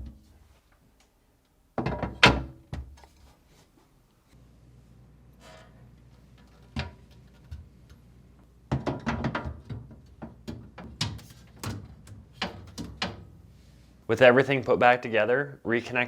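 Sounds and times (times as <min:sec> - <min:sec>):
refrigerator shelves clicking and knocking: 0:08.7 - 0:13.4.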